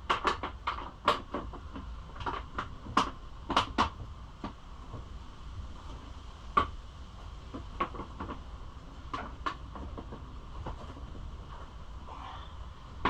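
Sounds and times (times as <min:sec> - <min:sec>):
tools and parts knocking: 0:00.0 - 0:05.0, 0:07.5 - 0:08.5, 0:09.1 - 0:11.6
steady low hum: 0:00.0 - 0:13.0.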